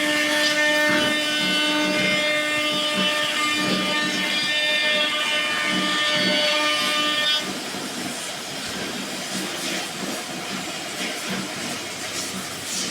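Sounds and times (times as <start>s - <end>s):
machine motor high whine: 0.0s - 7.6s.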